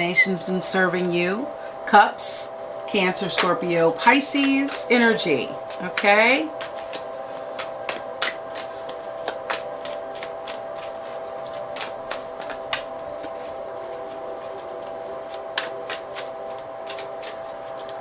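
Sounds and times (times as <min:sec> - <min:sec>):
steady hum: 0:00.0 - 0:18.0
cards shuffling with sharp clicks: 0:05.8 - 0:13.5, 0:15.2 - 0:18.0.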